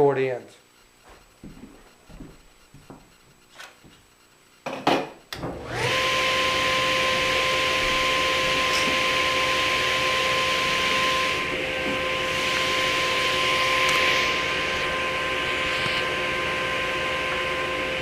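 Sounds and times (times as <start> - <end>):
table saw running: 5.4 - 18.0.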